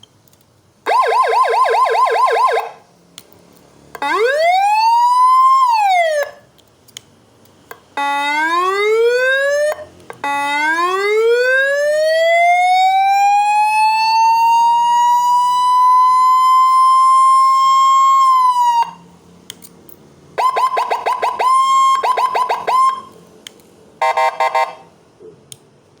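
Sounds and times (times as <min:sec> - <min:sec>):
electronic police siren: 0:00.9 - 0:02.8, 0:04.0 - 0:06.4, 0:08.0 - 0:19.0, 0:20.4 - 0:23.1, 0:24.0 - 0:24.8.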